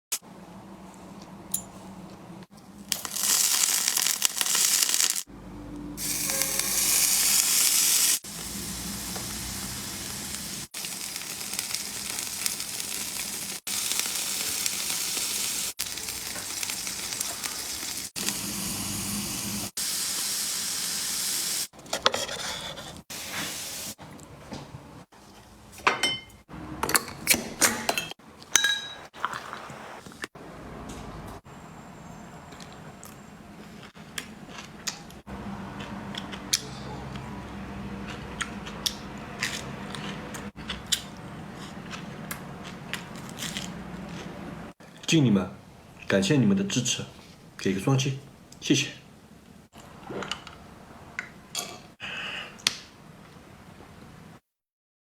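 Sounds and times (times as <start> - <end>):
food sizzling in a pan: 2.9 - 5.3, 6.0 - 21.7, 23.1 - 24.0
utensils clinking on cookware: 25.8 - 29.4.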